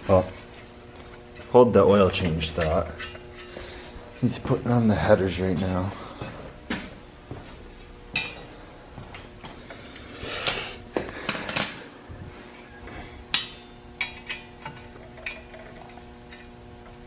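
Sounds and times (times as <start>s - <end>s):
metal tools clinking: 1.3s - 4.8s, 12.5s - 16.6s.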